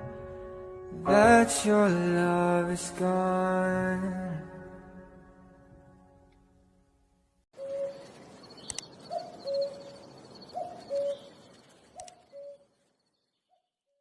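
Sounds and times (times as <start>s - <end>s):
bird cooing: 7.6s - 8.2s, 9.0s - 12.7s
faint clicks: 8.1s - 8.9s, 11.5s - 12.3s.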